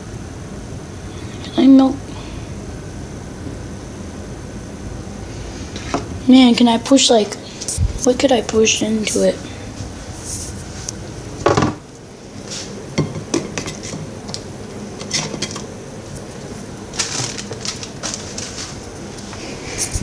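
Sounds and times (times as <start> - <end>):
utensil scraping a plate: 13.4 - 14.1.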